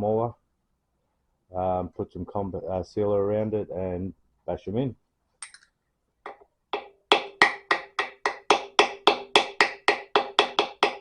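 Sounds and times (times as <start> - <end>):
hammer striking metal: 6.3 - 11.0.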